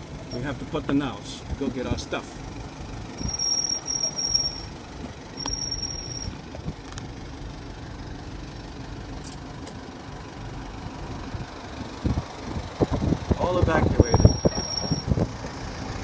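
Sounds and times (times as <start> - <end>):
vehicle engine running: 0.0 - 16.0
thin high tone: 3.2 - 4.8, 5.4 - 6.4, 13.8 - 15.1.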